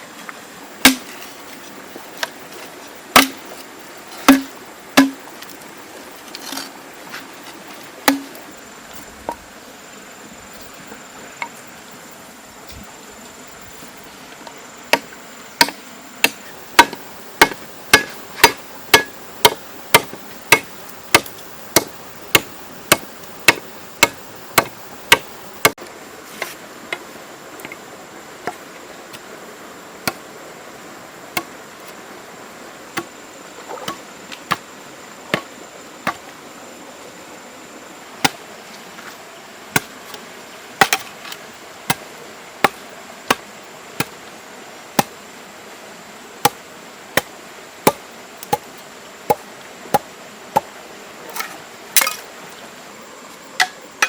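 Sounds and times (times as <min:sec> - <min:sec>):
high insect buzz: 0:00.0 - 0:54.0
hand tool striking: 0:00.8 - 0:01.3, 0:02.2 - 0:05.4, 0:08.0 - 0:08.4, 0:14.9 - 0:25.8.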